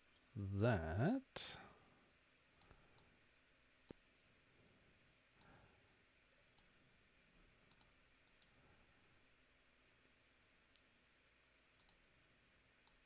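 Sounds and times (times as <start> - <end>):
computer mouse clicks: 2.6 - 3.1, 6.5 - 6.7, 7.7 - 8.6, 11.8 - 12.0.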